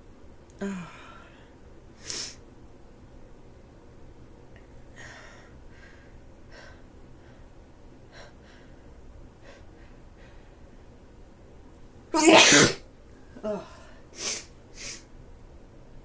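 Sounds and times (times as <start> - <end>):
faint gasping breaths: 4.9 - 10.9
person sneezing loudly: 12.2 - 12.8.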